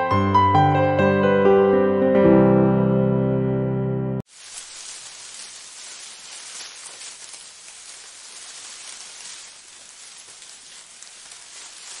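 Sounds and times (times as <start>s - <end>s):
rain falling: 4.2s - 12.0s.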